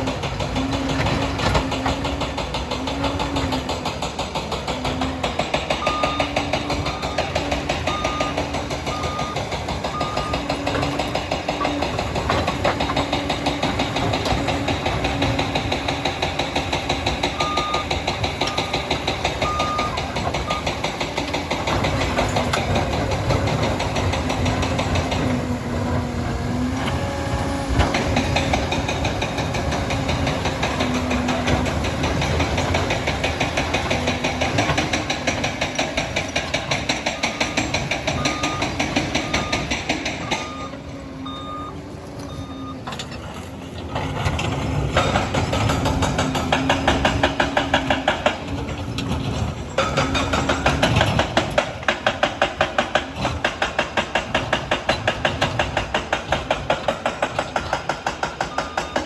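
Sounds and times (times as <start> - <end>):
diesel dozer engine rattling: 0.0 - 59.0
reverse alarm beeps: 5.7 - 10.6, 17.3 - 20.8, 37.1 - 43.1, 58.5 - 59.0.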